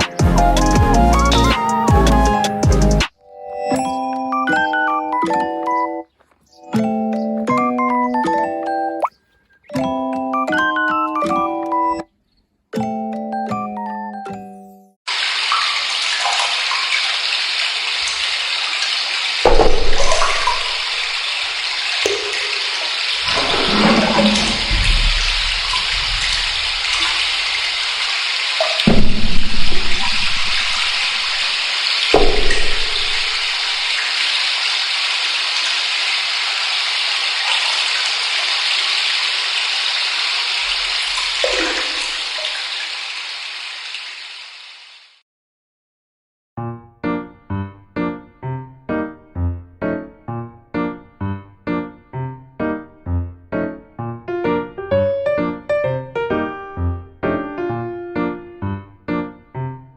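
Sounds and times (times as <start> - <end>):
shower spraying water: 15.1 - 45.2
splashes and thumps: 19.4 - 21.3, 22.0 - 34.4, 40.7 - 42.8.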